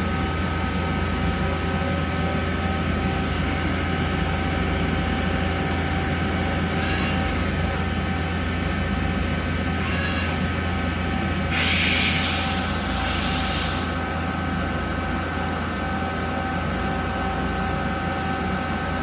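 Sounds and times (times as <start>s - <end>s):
lathe humming and whining: 0.0s - 19.0s
loud hiss: 11.5s - 14.0s.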